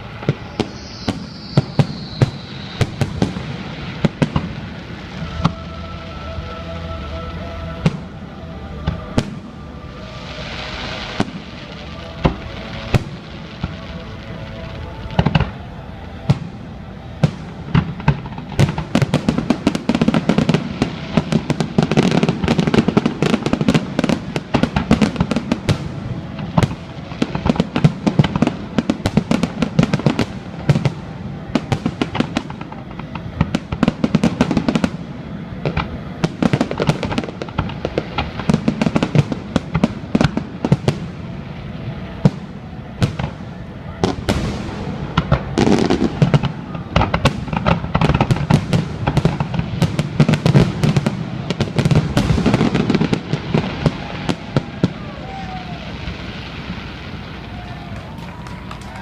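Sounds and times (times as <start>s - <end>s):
music playing: 0.0s - 40.9s
fireworks bangs and booms: 0.0s - 59.0s.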